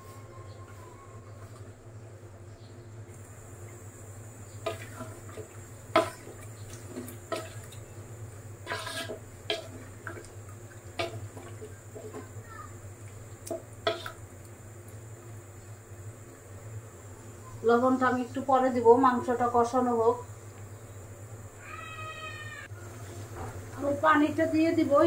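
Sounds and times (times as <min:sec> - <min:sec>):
spoon clinking and scraping pot: 0:08.6 - 0:10.2, 0:13.5 - 0:14.2.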